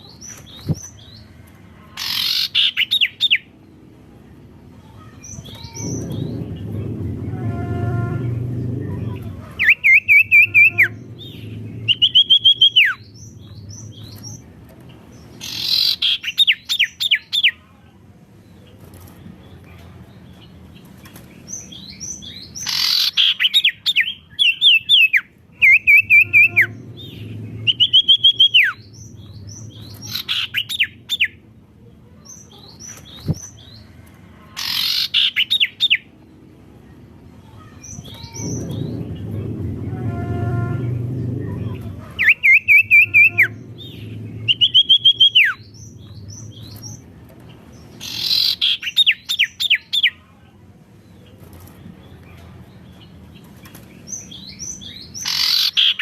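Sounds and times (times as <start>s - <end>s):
songbird singing whistled phrases: 48.0s - 50.2s.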